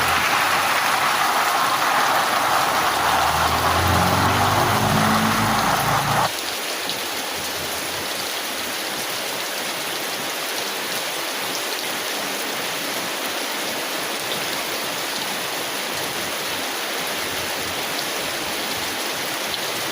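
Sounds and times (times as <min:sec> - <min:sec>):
engine-like hum: 0:00.0 - 0:06.3
rain on tin umbrella: 0:00.0 - 0:19.9.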